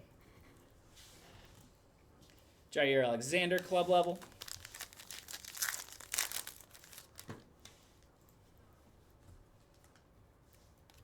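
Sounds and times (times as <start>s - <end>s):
card wrappers crinkling and tearing: 4.0s - 7.4s.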